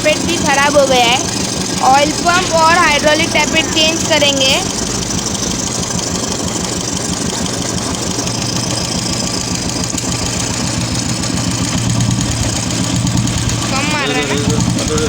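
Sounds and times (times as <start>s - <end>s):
motorcycle engine idling: 0.0s - 15.0s
valve train tapping: 0.0s - 15.0s.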